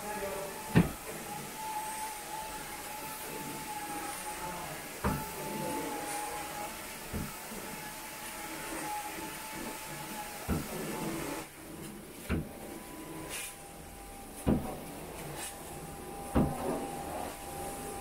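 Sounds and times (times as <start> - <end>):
carpet cleaning machine hum: 0.0 - 18.0.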